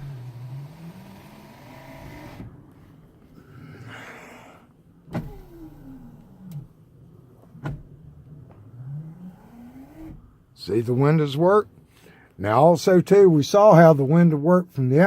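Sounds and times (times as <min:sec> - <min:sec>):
power window motor whine: 0:00.0 - 0:02.7, 0:05.1 - 0:10.5.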